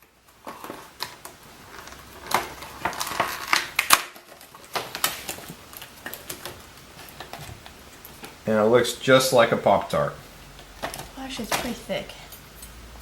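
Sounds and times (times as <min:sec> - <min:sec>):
snack packaging crackling: 0:00.0 - 0:12.8.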